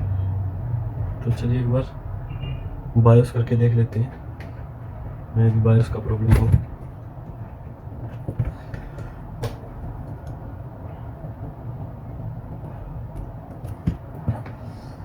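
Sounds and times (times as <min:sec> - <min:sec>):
sharp clicks and knocks: 0:06.2 - 0:10.4.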